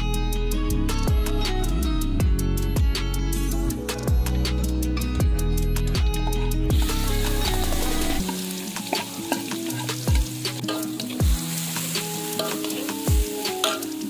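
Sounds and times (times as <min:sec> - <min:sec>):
background music with beat: 0:00.0 - 0:14.0
food sizzling in oil: 0:06.7 - 0:14.0.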